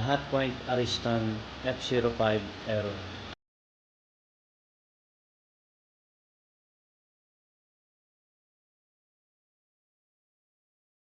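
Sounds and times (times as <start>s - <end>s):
man speaking: 0.0s - 3.2s.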